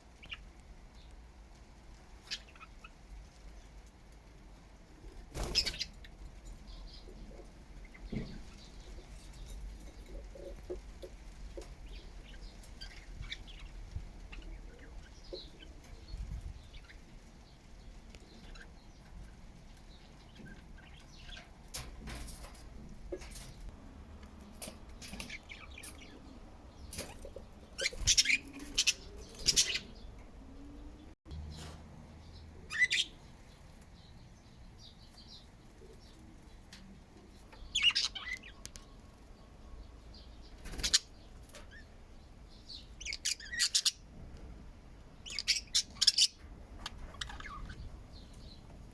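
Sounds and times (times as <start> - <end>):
budgerigars chirping and chattering: 2.2 - 3.0, 5.4 - 6.1, 25.0 - 30.2, 32.3 - 33.6, 37.5 - 38.7, 40.2 - 41.9, 42.7 - 44.0, 45.2 - 48.8.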